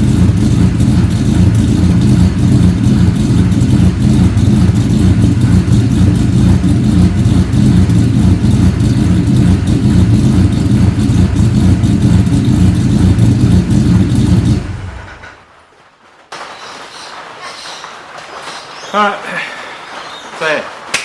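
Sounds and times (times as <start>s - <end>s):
car engine running through exhaust: 0.0s - 15.5s.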